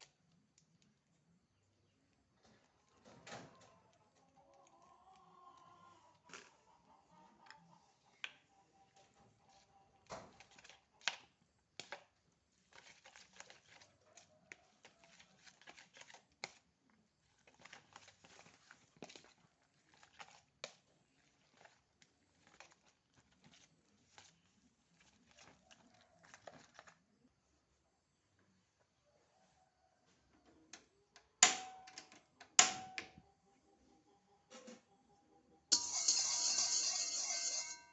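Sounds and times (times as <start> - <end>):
clicks and taps of food preparation: 7.4 - 24.3.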